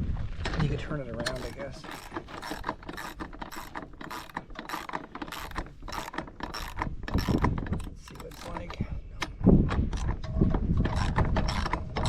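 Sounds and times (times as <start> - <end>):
ratchet wrench clicking: 1.2 - 8.7.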